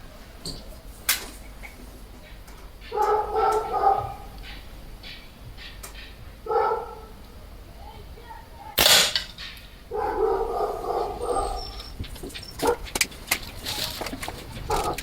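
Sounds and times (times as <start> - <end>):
dog drawn-out call: 2.3 - 4.8, 5.6 - 7.2, 9.8 - 12.9, 14.5 - 15.0
dog barking: 2.8 - 4.7, 6.4 - 7.3, 9.9 - 13.0, 14.6 - 15.0
air rifle shot crack: 8.8 - 9.5.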